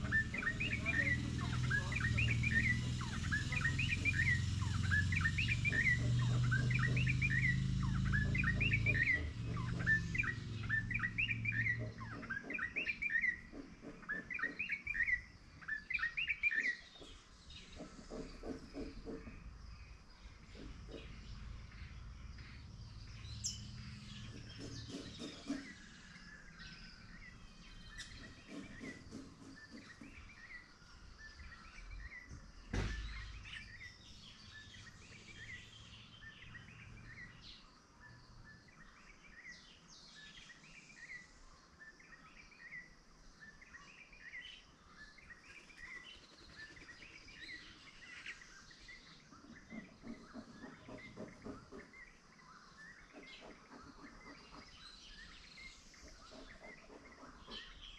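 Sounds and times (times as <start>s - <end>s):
small birds chirping: 0.0s - 57.9s
sharp knock: 32.7s - 33.4s.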